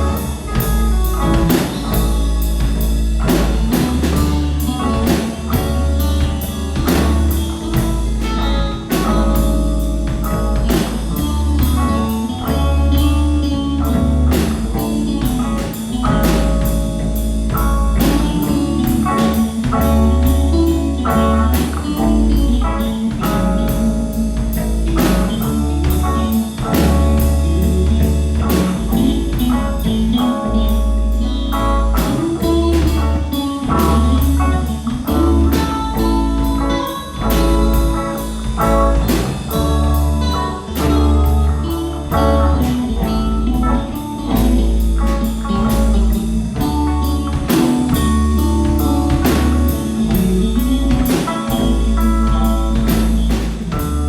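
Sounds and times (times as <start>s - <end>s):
drum hits: 0.0s - 12.7s, 32.0s - 54.0s
rock band playing: 0.0s - 54.0s.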